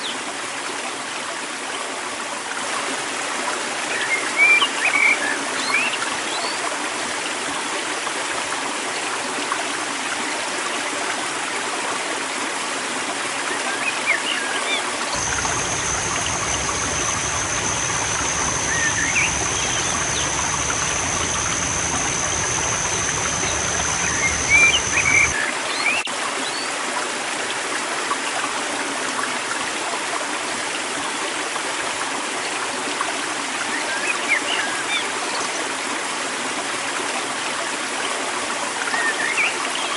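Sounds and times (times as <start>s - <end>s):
river water flowing: 15.1s - 30.4s
high whine: 15.2s - 25.4s
low hum: 15.2s - 25.4s
small birds chirping: 15.2s - 25.4s.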